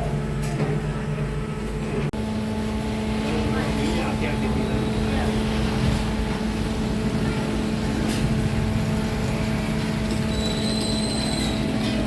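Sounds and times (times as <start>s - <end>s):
dense low rumbling noise: 2.2s - 10.4s.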